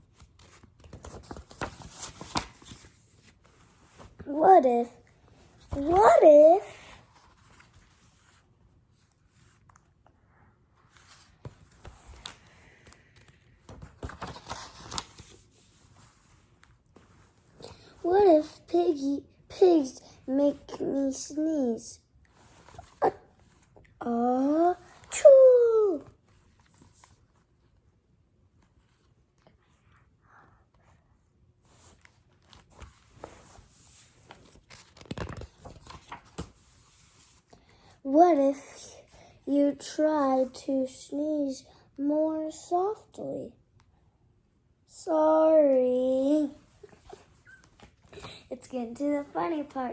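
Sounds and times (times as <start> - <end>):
page turning: 0.0 - 4.3, 10.9 - 17.9, 31.7 - 37.5
paper rustling: 0.0 - 9.8, 10.9 - 18.0, 31.7 - 37.6.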